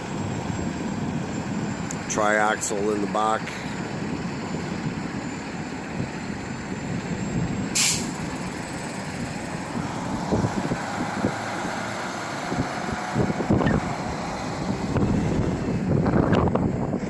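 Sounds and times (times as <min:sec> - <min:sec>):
heavy truck engine rumble: 0:00.0 - 0:17.0
air brakes hiss: 0:07.8 - 0:08.2
wind thumps on microphone: 0:13.2 - 0:14.0, 0:14.6 - 0:17.0.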